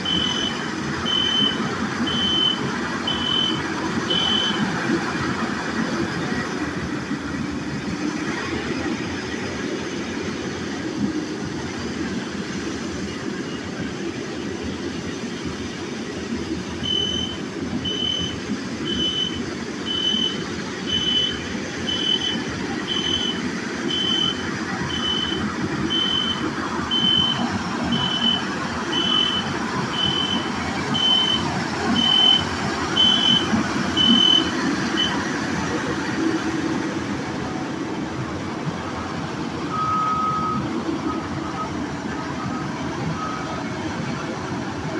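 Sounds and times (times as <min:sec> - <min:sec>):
vehicle backup alarm beeping: 0:00.0 - 0:06.4, 0:16.5 - 0:36.8, 0:38.9 - 0:44.8
engine rumble: 0:00.0 - 0:44.9.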